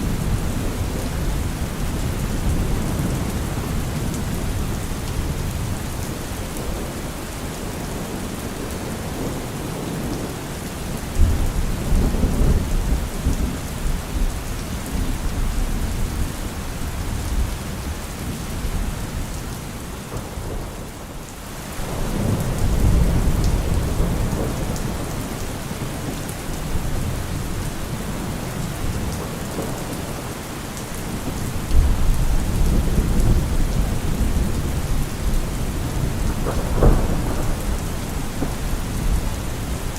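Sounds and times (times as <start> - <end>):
heavy rain: 0.0 - 39.9
thunder rumbling: 21.8 - 30.4, 31.0 - 39.9.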